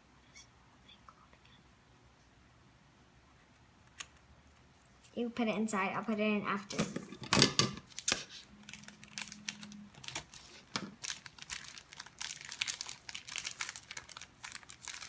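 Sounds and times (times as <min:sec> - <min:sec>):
plastic packet crinkling: 0:07.9 - 0:15.0.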